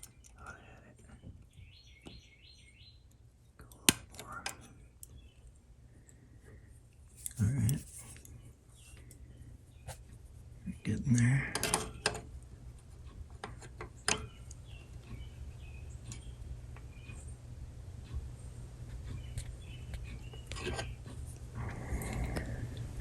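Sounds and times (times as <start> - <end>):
low steady hum: 0.0 - 23.0.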